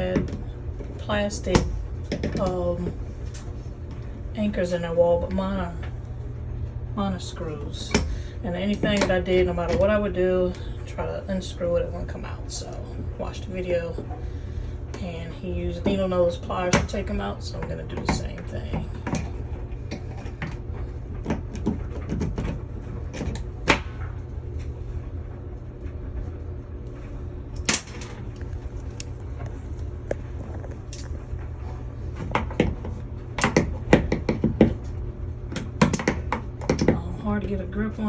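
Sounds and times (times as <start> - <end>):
steady low rumble: 0.0 - 38.0.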